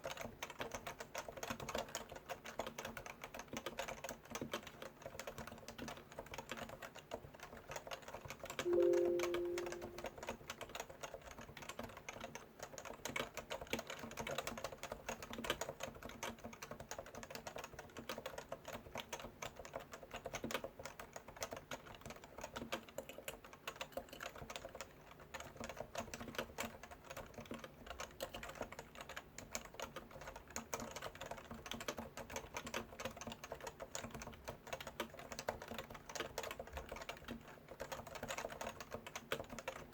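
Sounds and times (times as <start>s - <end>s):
fast keyboard typing: 0.0s - 39.9s
brief low tone: 8.7s - 10.3s.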